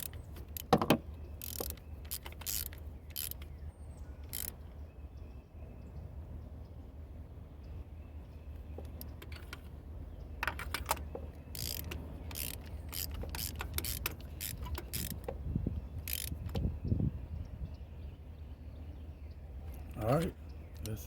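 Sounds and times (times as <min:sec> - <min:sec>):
socket ratchet clicking: 0:00.0 - 0:03.6, 0:04.2 - 0:04.6, 0:10.4 - 0:15.4, 0:16.0 - 0:16.7.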